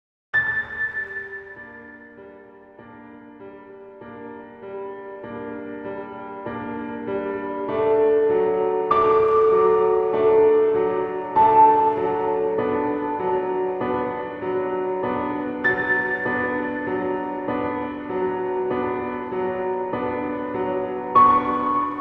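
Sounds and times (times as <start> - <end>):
soft piano chords: 0.4 - 22.0.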